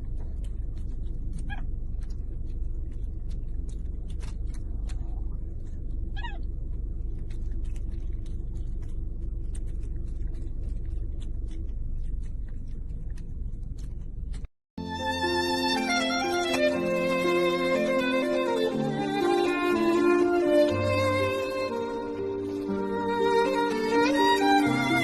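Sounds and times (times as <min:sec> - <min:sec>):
monkey eating smacking clicks: 0:00.0 - 0:14.5
steady low rumble: 0:00.0 - 0:14.5
monkey squeaking calls: 0:01.4 - 0:01.7, 0:06.1 - 0:06.4.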